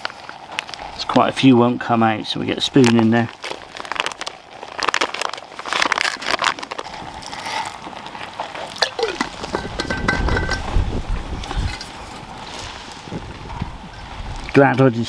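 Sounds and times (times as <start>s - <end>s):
spoon scraping container: 6.8s - 8.0s, 8.6s - 13.1s.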